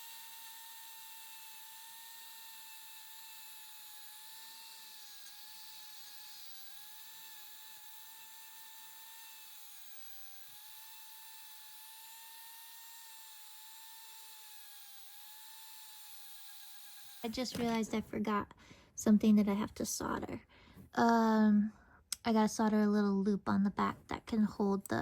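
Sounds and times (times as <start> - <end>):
rotary tool high whine: 0.0 - 17.8.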